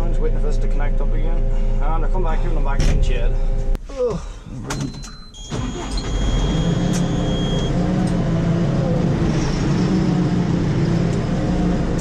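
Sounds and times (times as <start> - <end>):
vehicle engine humming: 5.5 - 12.0.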